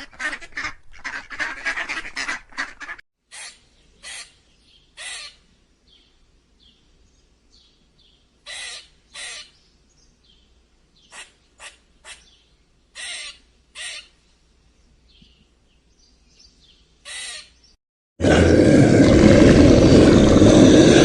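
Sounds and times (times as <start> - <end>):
bird harsh calls: 0.2 - 5.5, 8.0 - 9.7, 11.0 - 14.2, 16.4 - 17.8.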